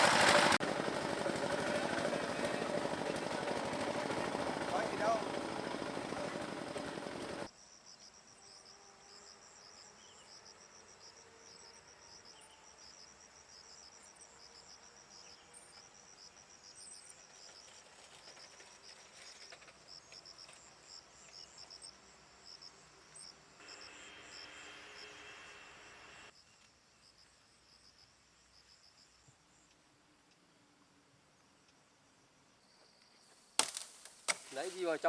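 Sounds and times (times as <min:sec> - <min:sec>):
loud noise cutting off: 0:00.0 - 0:07.5, 0:23.6 - 0:26.3
insects chirping: 0:00.0 - 0:29.8, 0:31.3 - 0:35.0.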